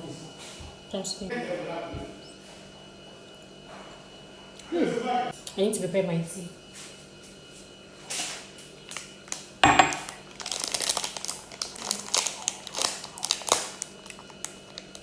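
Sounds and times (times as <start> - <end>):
packaging crinkling and tearing: 8.9 - 15.0.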